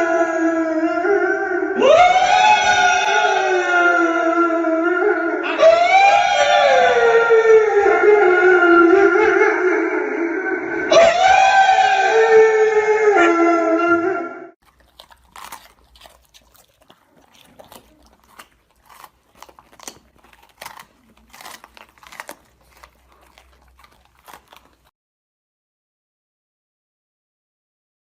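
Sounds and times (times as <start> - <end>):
pet chewing dry food: 14.6 - 24.9.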